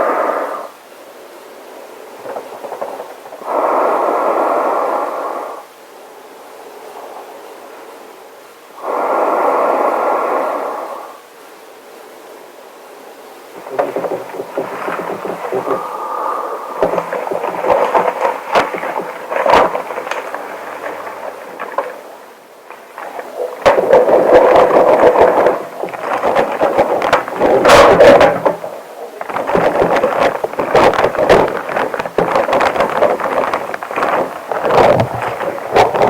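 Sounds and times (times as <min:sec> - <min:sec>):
breathing through gas mask: 0:15.4 - 0:17.2.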